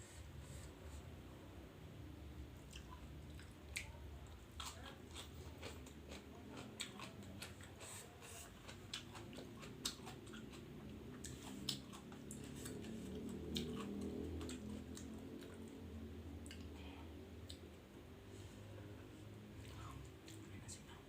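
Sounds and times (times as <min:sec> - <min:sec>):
person chewing food: 0:02.6 - 0:16.8, 0:17.4 - 0:17.8
wet mouth clicks: 0:16.4 - 0:16.7.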